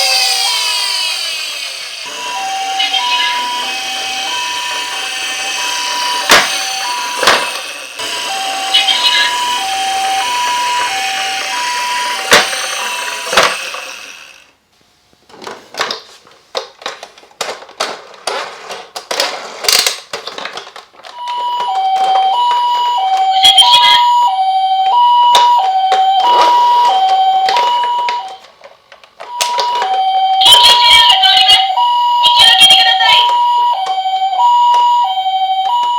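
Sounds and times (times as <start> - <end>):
two-tone ambulance siren: 0.0 - 14.4, 21.2 - 28.5, 29.2 - 35.9.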